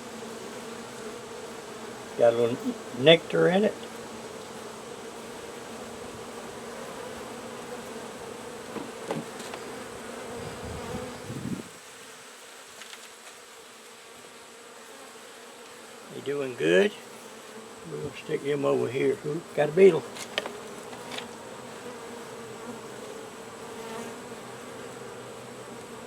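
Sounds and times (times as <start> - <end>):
bees humming: 0.0 - 26.0
soft knocks: 8.7 - 9.6.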